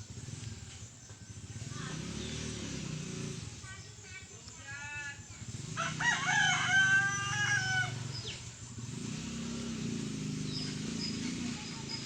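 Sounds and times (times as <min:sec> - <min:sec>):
rooster crowing: 0:05.8 - 0:08.1.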